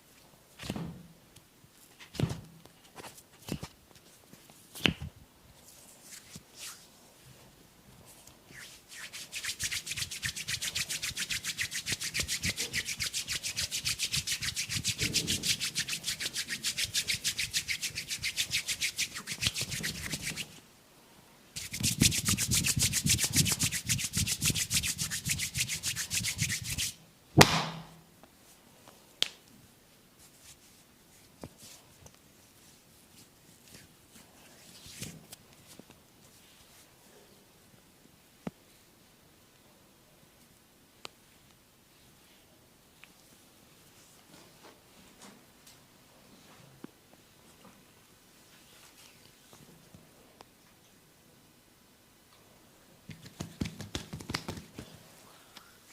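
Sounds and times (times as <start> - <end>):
hands rubbing rapidly over skin: 8.5 - 20.6, 21.6 - 27.0, 53.1 - 55.0
sharp smack on skin: 27.4 - 28.0.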